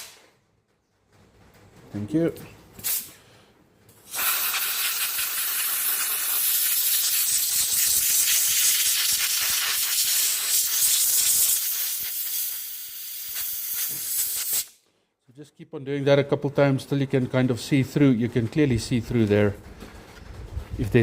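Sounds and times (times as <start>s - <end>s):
compressed air blow gun hissing: 4.0s - 14.8s.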